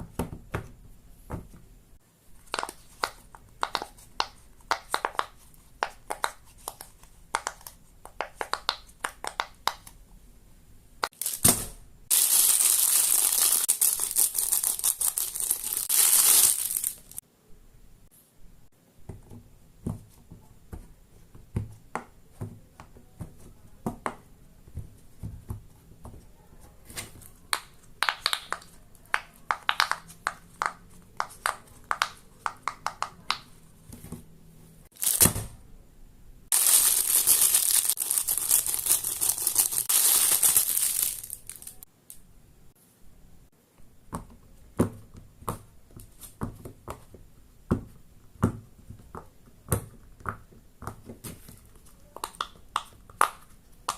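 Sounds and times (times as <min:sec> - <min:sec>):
crinkling crackling noise: 0:12.1 - 0:17.2, 0:36.5 - 0:41.9
fidget toys popping and clicking: 0:27.6 - 0:33.4.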